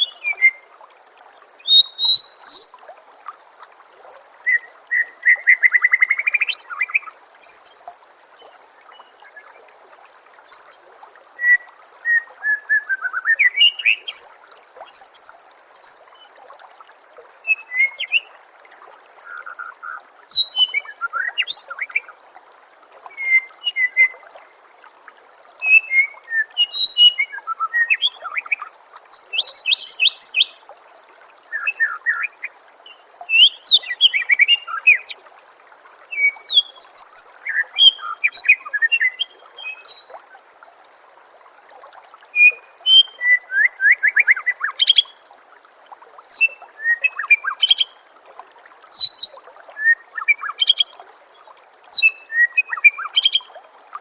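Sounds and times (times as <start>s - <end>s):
bird singing whistles and trills: 0.0s - 0.6s, 1.6s - 2.8s, 4.5s - 8.0s, 11.4s - 14.3s, 17.4s - 18.3s, 19.3s - 22.1s, 23.1s - 24.2s, 25.6s - 30.6s, 31.5s - 35.2s, 36.1s - 40.1s, 42.4s - 45.1s, 46.3s - 47.9s, 48.9s - 50.9s, 51.9s - 53.4s
water trickling: 0.0s - 54.0s.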